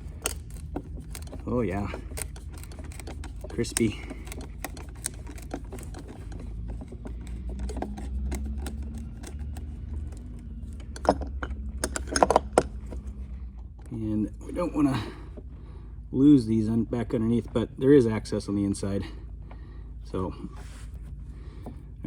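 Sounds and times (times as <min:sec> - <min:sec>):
screwdriver clicking on terminals: 0:00.0 - 0:11.2
low steady rumble: 0:00.0 - 0:22.0.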